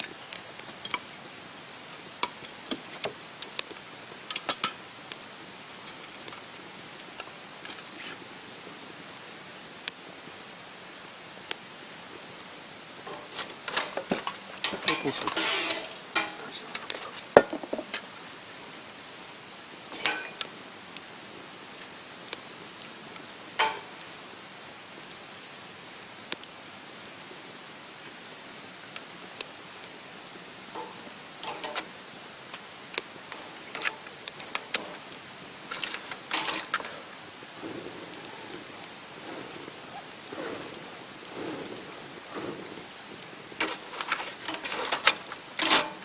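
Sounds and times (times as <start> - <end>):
steady low hiss: 0.0 - 46.0
cookware and utensils clinking: 13.1 - 16.7, 20.0 - 20.4.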